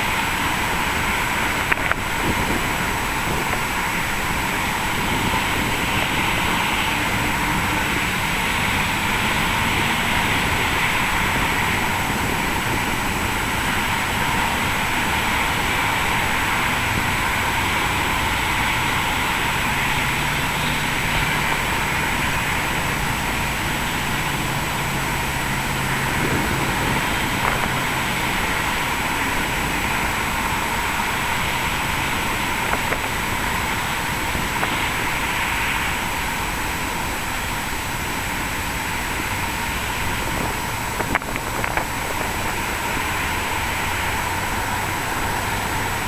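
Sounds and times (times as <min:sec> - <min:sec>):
jet engines whining: 0:00.0 - 0:46.0.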